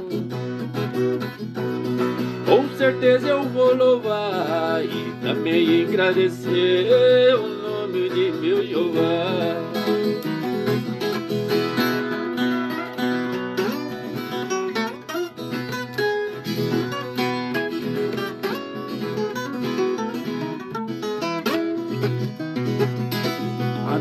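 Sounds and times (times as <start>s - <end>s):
person singing: 0.0s - 1.3s, 2.2s - 10.4s, 23.6s - 24.0s
folk guitar plucking and strumming: 0.0s - 24.0s.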